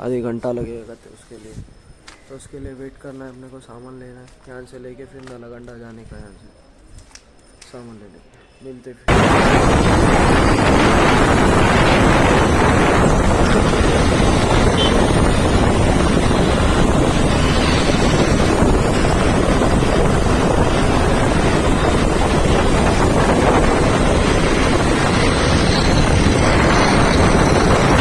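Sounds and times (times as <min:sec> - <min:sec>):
wind buffeting microphone: 0:09.1 - 0:28.0.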